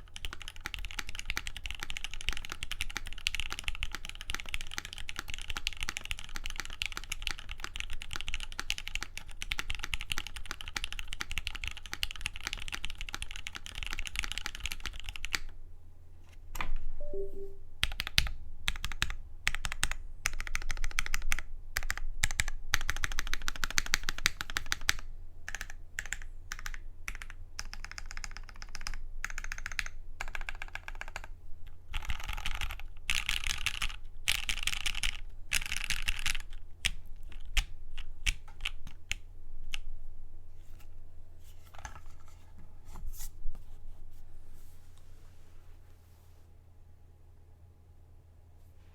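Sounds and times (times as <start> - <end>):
mechanical keyboard typing: 0.0 - 15.5, 17.0 - 31.3, 31.9 - 39.8.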